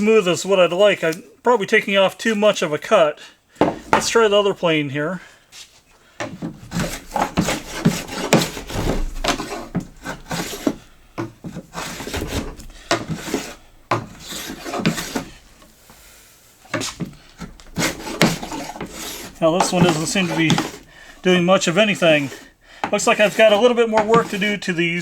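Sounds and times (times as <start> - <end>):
hand plane scraping wood: 5.5 - 25.0.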